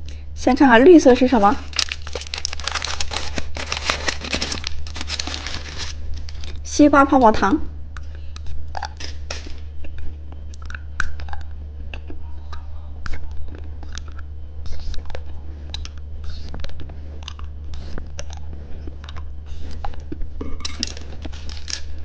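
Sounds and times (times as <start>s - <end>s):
steady low hum: 0.0s - 22.0s
bubble gum clicking and crackling: 1.7s - 3.9s, 8.0s - 9.1s, 9.8s - 15.1s, 15.7s - 18.4s.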